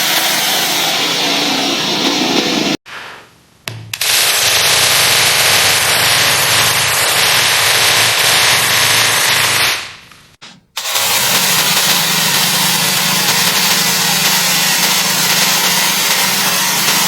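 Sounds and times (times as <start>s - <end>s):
mini chainsaw cutting: 4.0s - 9.9s, 10.8s - 17.0s.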